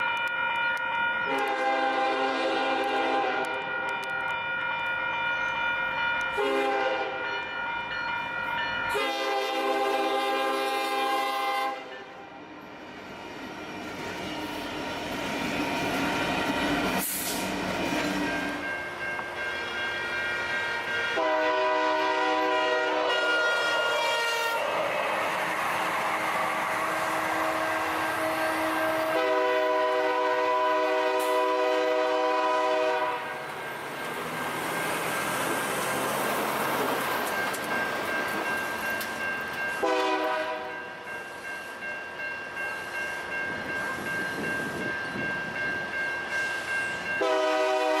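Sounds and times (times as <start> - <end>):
freight train horn blasts: 0.0 - 12.2, 19.4 - 25.4, 26.7 - 33.4, 39.8 - 40.9, 47.1 - 48.0
train rolling noise: 0.0 - 48.0.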